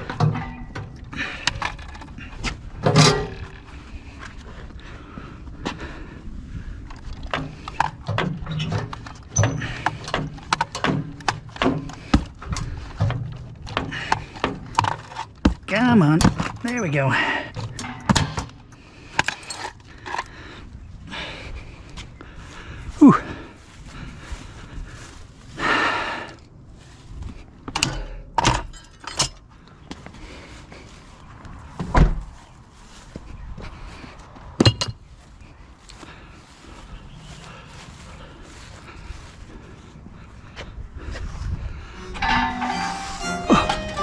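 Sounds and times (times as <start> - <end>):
metal scraping: 0.0 - 2.2, 42.0 - 44.0
metal clanks and knocks: 0.0 - 3.8, 6.9 - 20.3, 27.7 - 29.4, 42.0 - 44.0.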